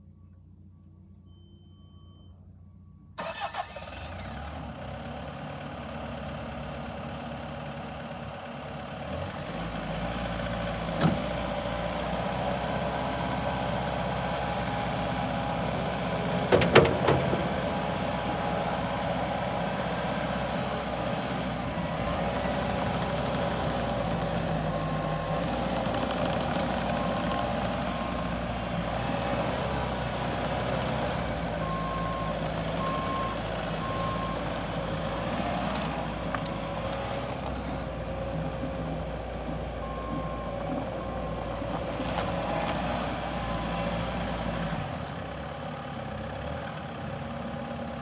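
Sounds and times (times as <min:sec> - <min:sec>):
short beep: 0:00.8 - 0:03.2
diesel engine starting and running: 0:02.8 - 0:48.0
sharp clunk: 0:16.5 - 0:17.6.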